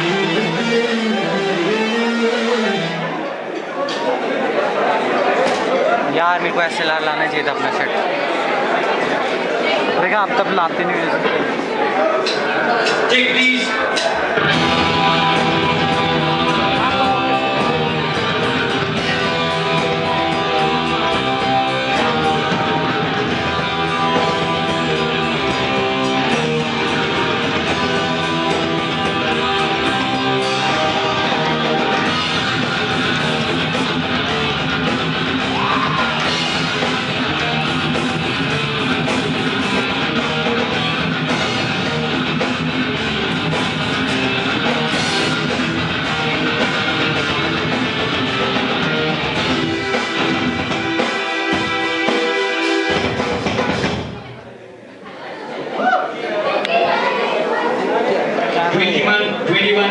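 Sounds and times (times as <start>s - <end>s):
electric guitar: 0.0s - 3.2s, 14.3s - 54.2s
heavy metal band playing: 0.0s - 3.2s, 12.9s - 54.3s.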